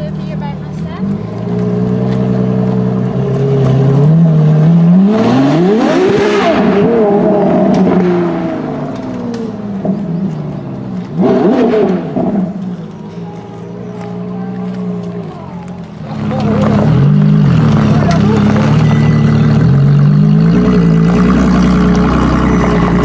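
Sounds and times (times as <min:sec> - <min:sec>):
car engine revving: 0:00.0 - 0:23.0.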